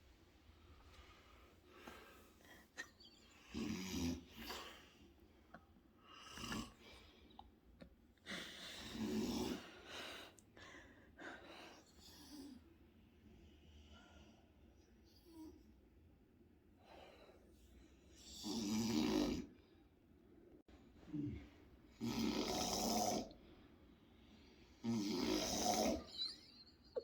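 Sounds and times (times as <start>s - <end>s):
man snoring loudly: 18.4s - 19.5s, 22.0s - 23.3s, 24.8s - 26.1s.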